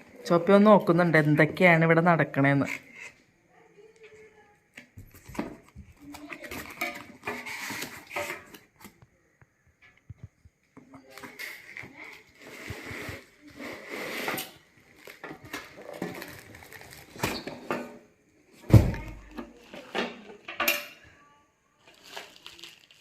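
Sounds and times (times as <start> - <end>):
packaging rustling and crinkling: 11.1 - 17.7, 21.8 - 23.0.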